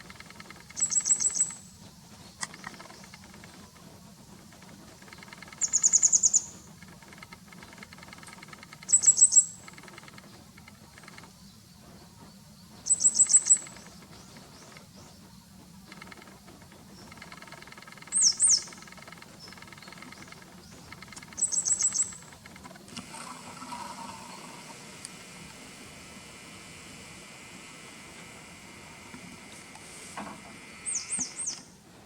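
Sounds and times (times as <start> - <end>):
bird calling high sharp notes: 8.8 - 9.7, 21.3 - 22.3, 30.8 - 31.7.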